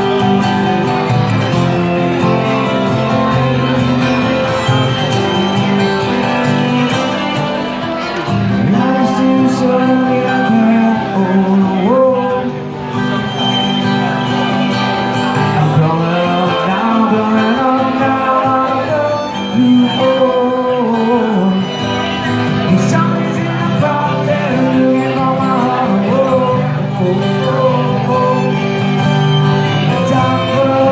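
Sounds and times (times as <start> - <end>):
country band playing: 0.0 - 30.9
fiddle: 0.0 - 30.9
guitar: 0.0 - 30.9.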